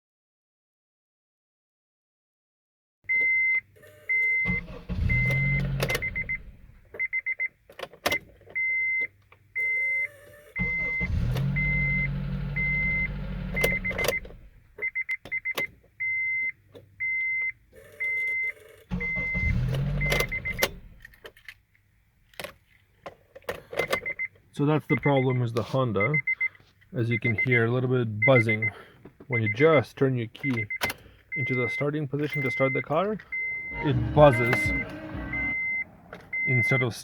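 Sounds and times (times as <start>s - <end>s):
ignition buzz: 4.1s - 6.9s, 10.4s - 14.6s, 18.0s - 21.1s, 33.4s - 36.8s
ignition key clicks: 13.5s - 14.4s, 30.4s - 33.6s
high reminder chime beeping: 33.4s - 36.8s.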